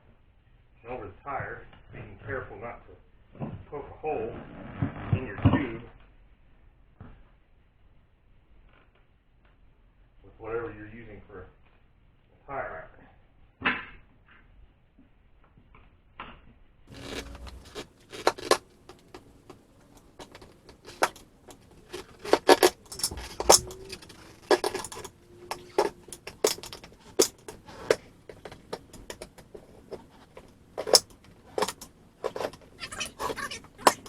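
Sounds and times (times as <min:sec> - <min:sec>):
tire spoons clinking on wheel rim: 0:17.0 - 0:32.8.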